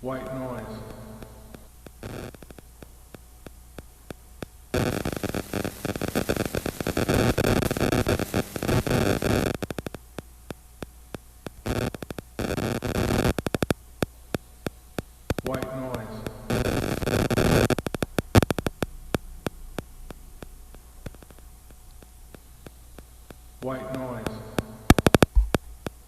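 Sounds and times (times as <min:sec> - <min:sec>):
low electrical hum: 0:00.0 - 0:26.0
rapid irregular static clicks: 0:00.0 - 0:26.0
harsh hiss bursts: 0:04.4 - 0:09.7.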